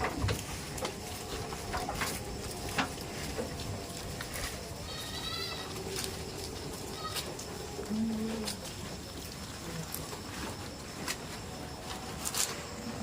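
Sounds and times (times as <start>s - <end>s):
goat hooves knocking and clicking: 0.0s - 7.5s
goat high-pitched call: 4.8s - 8.5s.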